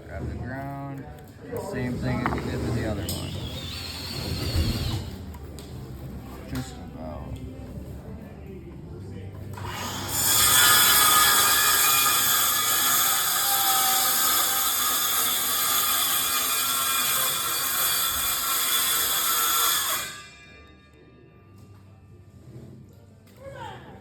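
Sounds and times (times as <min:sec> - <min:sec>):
power tool running: 0:02.2 - 0:05.2, 0:09.6 - 0:20.3.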